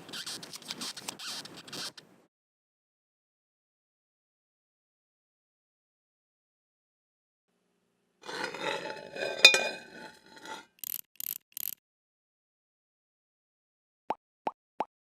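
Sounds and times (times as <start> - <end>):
metallic scrape: 8.2 - 11.8
ringing metal clank: 9.3 - 9.8.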